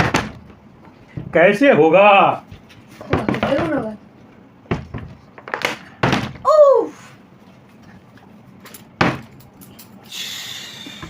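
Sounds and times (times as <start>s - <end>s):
plastic bottle thudding down: 4.7s - 6.4s
person exclaiming: 6.4s - 7.1s.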